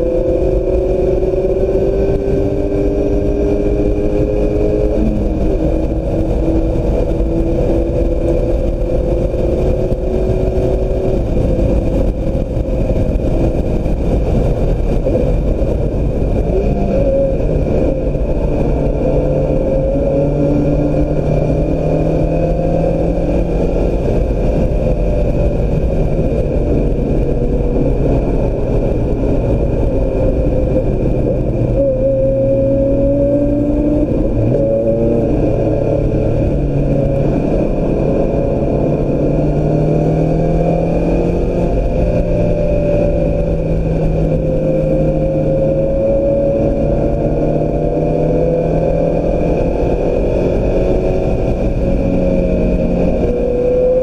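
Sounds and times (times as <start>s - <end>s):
car engine running hard: 0.0s - 54.0s
road and wind noise: 0.0s - 54.0s.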